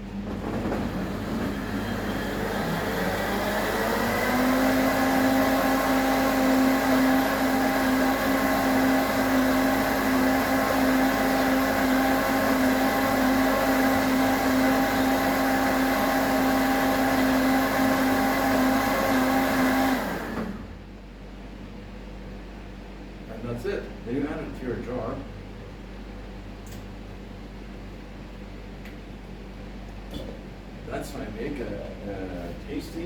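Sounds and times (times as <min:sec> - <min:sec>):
blender motor running: 0:00.3 - 0:20.7.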